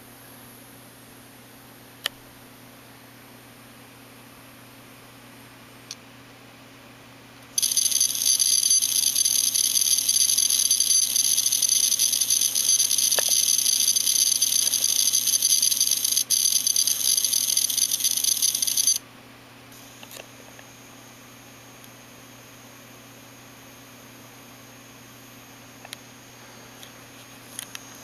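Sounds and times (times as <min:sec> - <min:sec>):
hard drive rattling buzz: 0:07.6 - 0:19.0.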